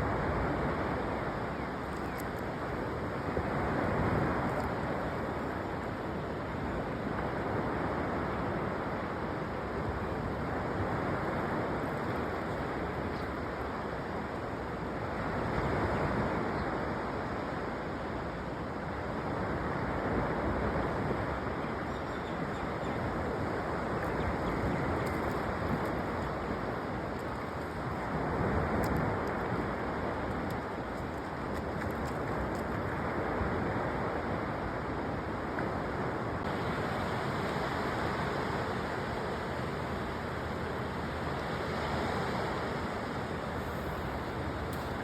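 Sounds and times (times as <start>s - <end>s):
surf washing onto beach: 0.0s - 45.0s
wind: 0.0s - 45.0s.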